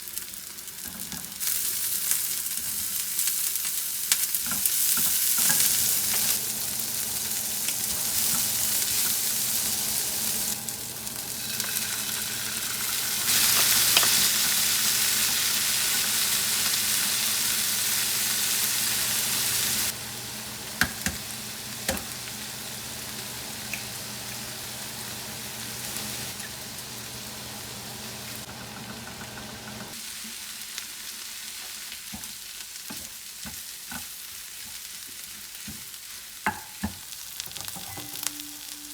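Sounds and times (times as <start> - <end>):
food sizzling in a frying pan: 0.0 - 38.9
utensil clicking against pan: 20.8 - 21.2.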